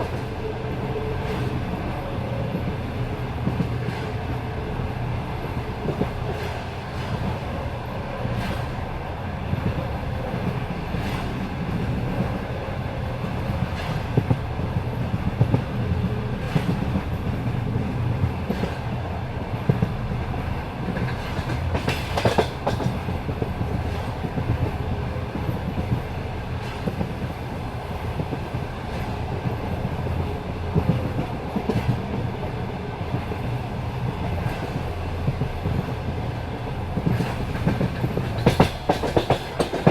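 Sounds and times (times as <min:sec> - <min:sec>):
low train rumble: 0:00.0 - 0:39.9
train wheels clattering: 0:13.2 - 0:39.9.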